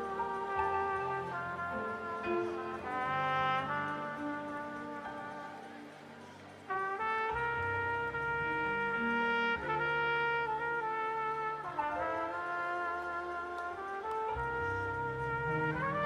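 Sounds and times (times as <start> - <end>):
trumpet slow melody: 0.0 - 16.0.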